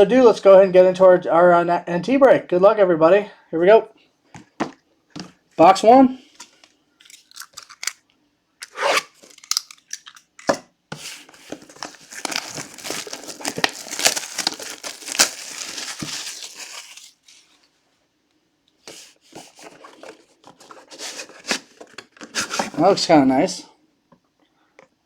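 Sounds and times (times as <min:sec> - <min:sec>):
shrink wrap ripping: 0:08.6 - 0:10.5, 0:11.4 - 0:17.5
plastic wrap crinkling: 0:08.7 - 0:17.7.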